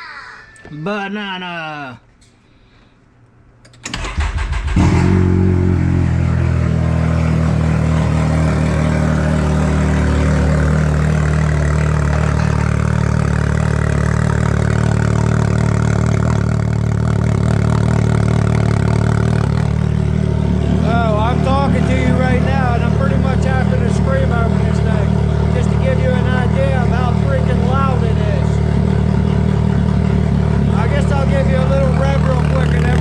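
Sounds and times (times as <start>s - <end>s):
engine starter cranking: 3.6s - 5.2s
loud engine idling: 4.0s - 33.0s.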